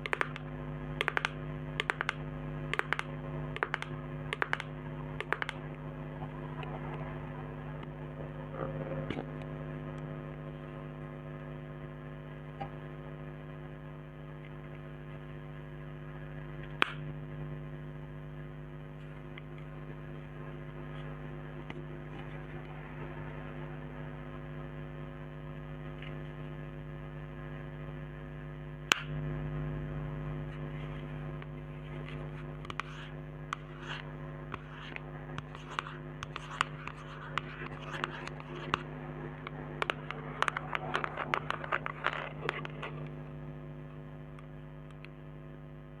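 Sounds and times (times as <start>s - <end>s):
electrical hum: 0.0s - 46.0s
fingernails tapping on containers: 1.0s - 5.6s.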